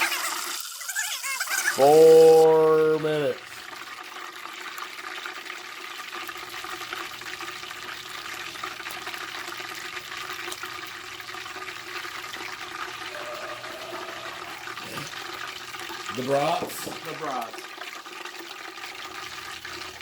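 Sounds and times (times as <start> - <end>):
oil bubbling and sizzling: 0.0 - 20.0
oil spitting and popping: 14.4 - 20.0.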